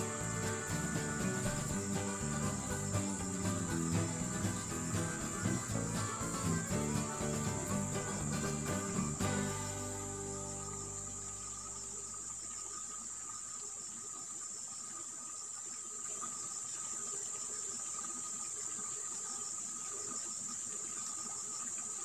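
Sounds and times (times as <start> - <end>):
insects trilling: 0.0 - 22.0
low steady tone: 9.2 - 13.4.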